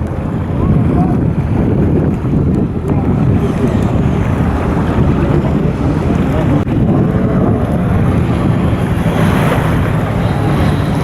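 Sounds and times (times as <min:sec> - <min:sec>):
jet ski engines running: 0:00.0 - 0:11.0
wind buffeting microphone: 0:00.0 - 0:11.0.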